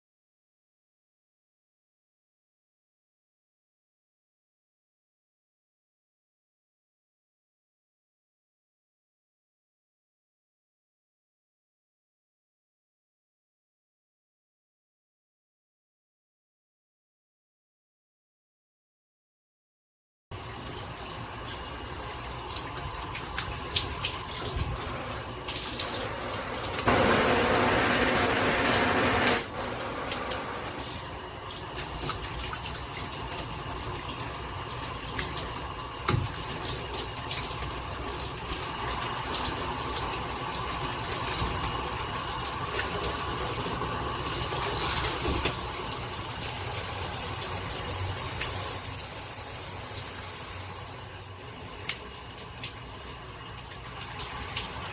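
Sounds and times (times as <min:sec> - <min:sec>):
shower water spraying: 0:21.3 - 0:42.2, 0:44.4 - 0:51.2.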